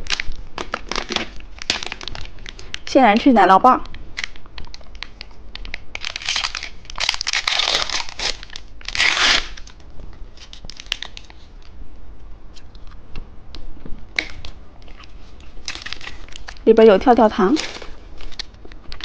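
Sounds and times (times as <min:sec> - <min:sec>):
plastic wrapper ripping: 0:00.0 - 0:02.8, 0:04.2 - 0:11.7, 0:14.1 - 0:16.7, 0:17.4 - 0:19.0
plastic wrapper crinkling: 0:00.0 - 0:11.8, 0:14.1 - 0:19.0.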